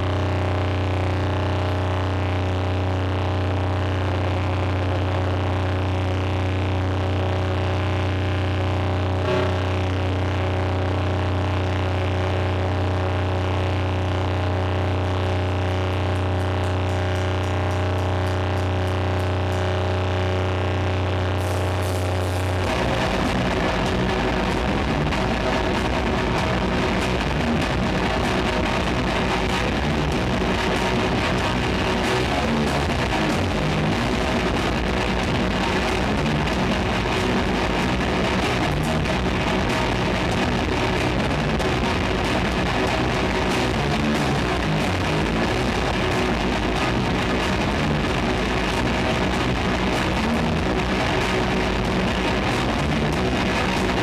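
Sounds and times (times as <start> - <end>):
metal band playing live: 9.2 - 10.6, 21.4 - 54.0.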